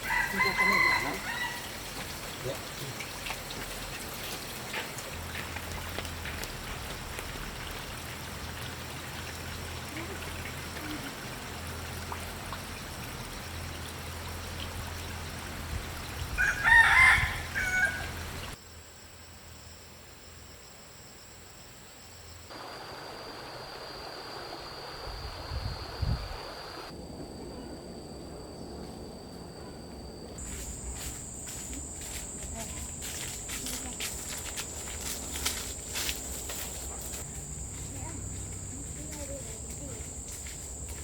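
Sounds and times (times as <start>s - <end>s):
rooster crowing: 0.0s - 1.9s, 16.4s - 18.5s
steady background hiss: 16.8s - 41.0s.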